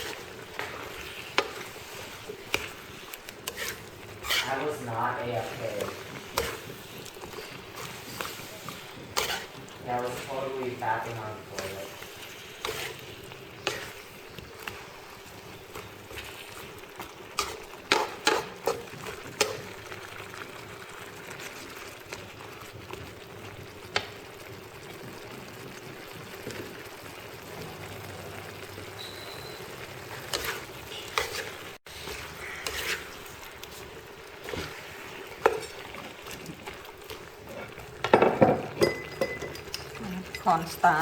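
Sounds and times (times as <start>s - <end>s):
spatula scraping and knocking pan: 0.0s - 19.9s, 30.0s - 41.0s
food sizzling in a pan: 0.0s - 41.0s.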